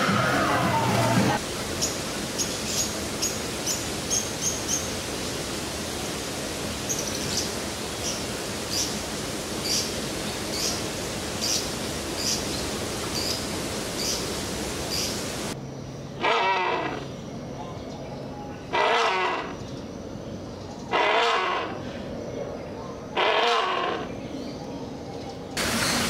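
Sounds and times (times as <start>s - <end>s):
steady rushing hiss: 0.0s - 15.6s, 25.6s - 26.0s.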